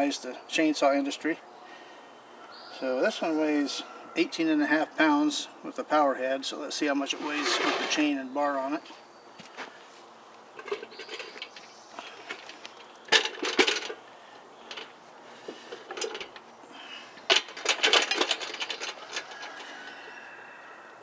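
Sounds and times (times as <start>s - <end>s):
chainsaw metal clanks and rattles: 12.2s - 14.0s, 15.7s - 16.4s, 17.3s - 19.7s.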